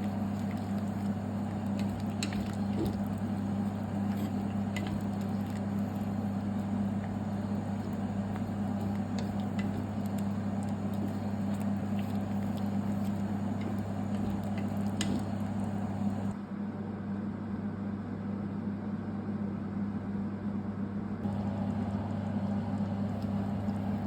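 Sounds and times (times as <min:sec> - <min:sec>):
cooking utensils clicking: 0:00.0 - 0:16.3
low machine hum: 0:00.0 - 0:24.0.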